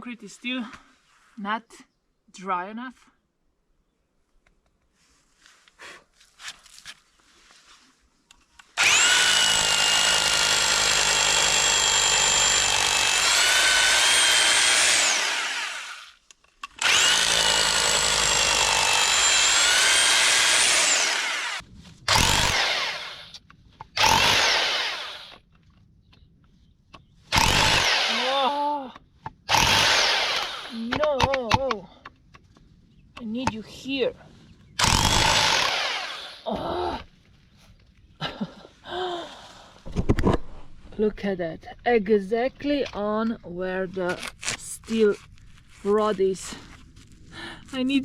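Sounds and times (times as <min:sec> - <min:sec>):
hammer drill boring into concrete: 0:08.8 - 0:25.4, 0:27.3 - 0:28.5, 0:29.5 - 0:31.6, 0:34.8 - 0:36.5.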